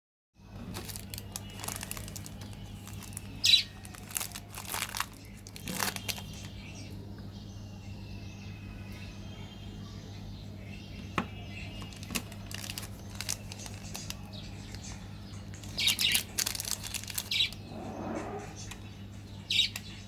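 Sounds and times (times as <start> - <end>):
low electrical hum: 0.4 - 20.0
loud sharp plastic crackle: 0.5 - 6.6, 11.8 - 17.6
plastic packaging crinkling: 0.6 - 6.6, 11.8 - 17.6.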